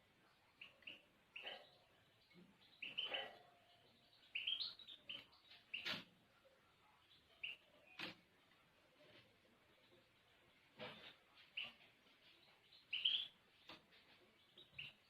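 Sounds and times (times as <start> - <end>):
songbird chirping: 0.0 - 15.0.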